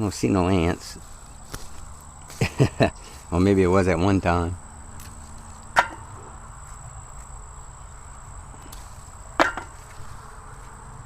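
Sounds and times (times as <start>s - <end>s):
faint insect drone: 0.0s - 11.0s
sharp knocks: 5.8s - 6.1s, 9.4s - 9.8s.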